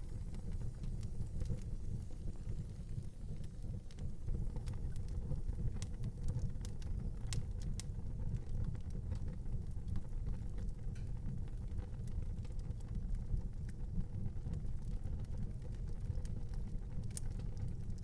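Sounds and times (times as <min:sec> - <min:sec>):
wood fire crackling and popping: 0:00.0 - 0:18.0.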